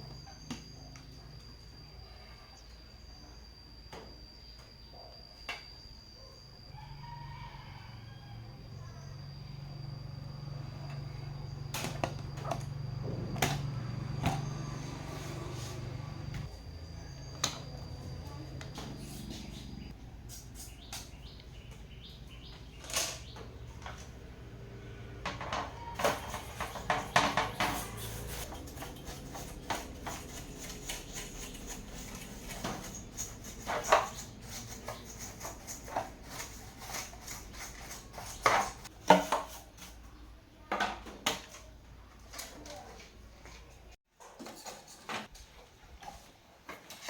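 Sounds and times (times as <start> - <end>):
steady low hum: 8.3 - 38.9.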